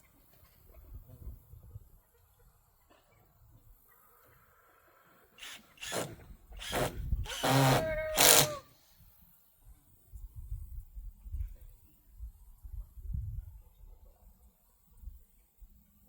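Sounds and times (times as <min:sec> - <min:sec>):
power drill whining: 0:05.4 - 0:08.8.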